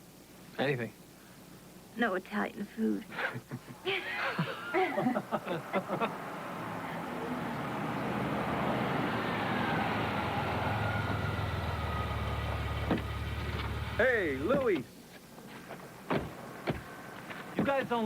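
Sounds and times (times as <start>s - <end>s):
engine and road noise: 5.0s - 14.8s, 15.7s - 18.0s
low engine hum: 5.1s - 14.6s.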